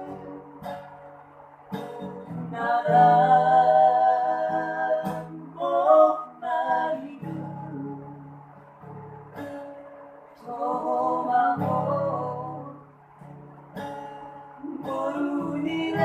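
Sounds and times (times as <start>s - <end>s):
acoustic guitar chords: 0.0s - 16.0s
person singing: 2.5s - 8.0s, 10.4s - 12.8s, 14.6s - 16.0s.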